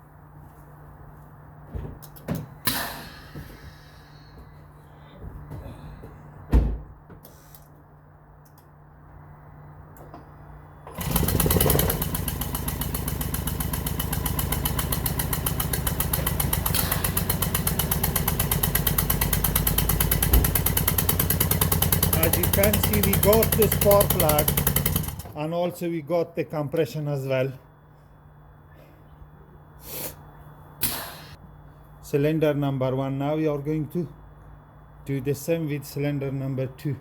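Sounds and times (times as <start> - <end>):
car engine turning over: 10.8 - 25.4.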